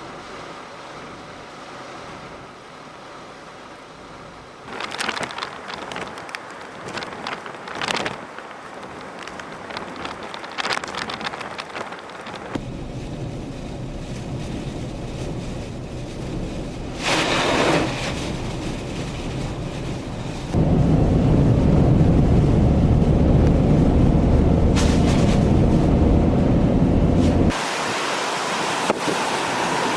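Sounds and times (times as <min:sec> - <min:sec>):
rain: 0:00.0 - 0:29.9
wind buffeting microphone: 0:05.1 - 0:27.6
gust of hiss: 0:16.8 - 0:18.9, 0:24.6 - 0:26.0.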